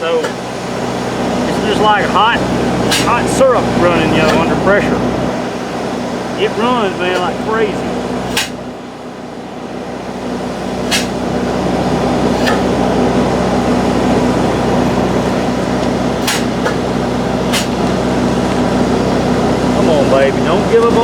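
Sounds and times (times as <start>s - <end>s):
foam pump humming and hissing: 0.0s - 21.0s.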